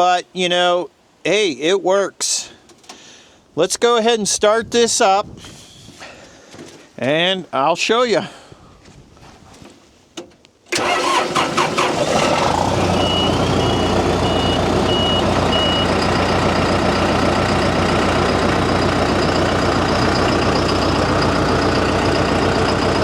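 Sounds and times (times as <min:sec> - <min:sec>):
diesel tractor engine idling: 0:10.7 - 0:23.0
starter cranking: 0:10.8 - 0:12.9.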